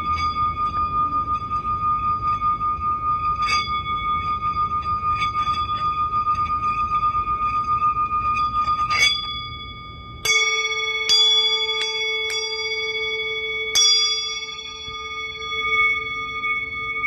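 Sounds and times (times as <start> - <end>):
pulsing tone with low hum: 0.0 - 17.0
bells ringing: 8.4 - 17.0.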